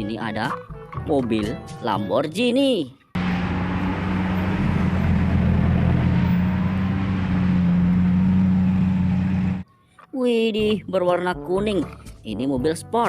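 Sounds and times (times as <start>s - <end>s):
car engine humming: 3.2s - 9.6s.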